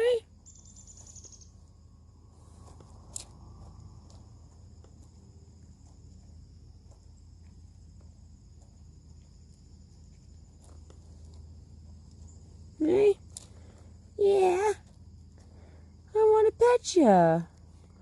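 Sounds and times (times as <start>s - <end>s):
high-pitched insect chorus: 0.0s - 18.0s.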